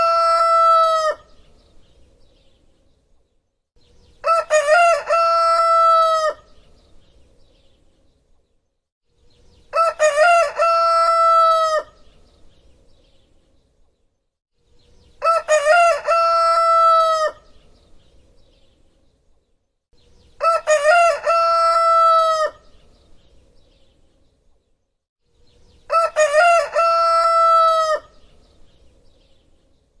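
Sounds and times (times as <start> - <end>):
rooster crowing: 0.0 - 1.3, 4.2 - 6.5, 9.7 - 12.0, 15.2 - 17.5, 20.4 - 22.6, 25.9 - 28.2.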